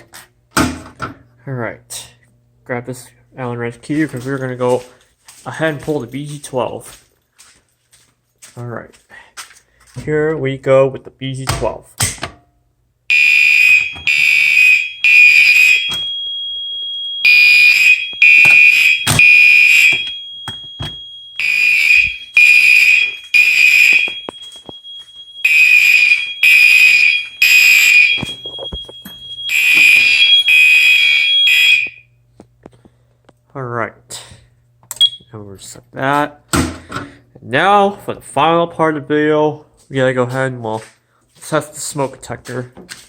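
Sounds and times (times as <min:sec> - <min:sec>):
steady high tone: 0:13.1 - 0:32.0
fire alarm horn blasts: 0:13.1 - 0:32.2.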